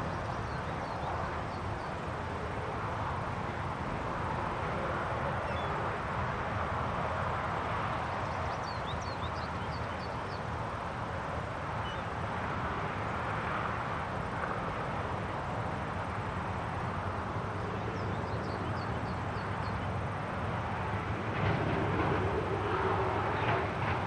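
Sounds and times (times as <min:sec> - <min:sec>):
steady wind blowing: 0:00.0 - 0:24.0.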